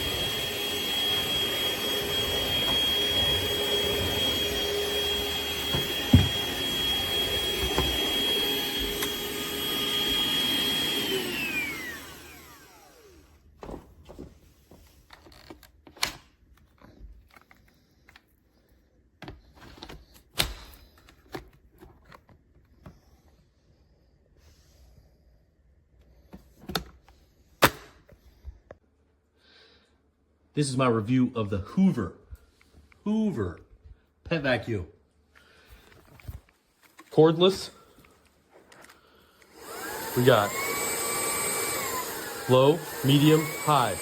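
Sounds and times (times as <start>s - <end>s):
stick vacuum whining: 0.0s - 13.3s, 37.1s - 44.0s.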